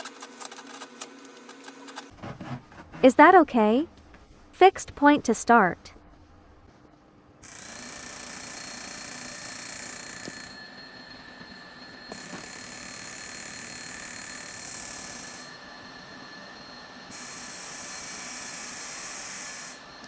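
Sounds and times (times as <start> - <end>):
device hiss with high whine: 7.4 - 20.0.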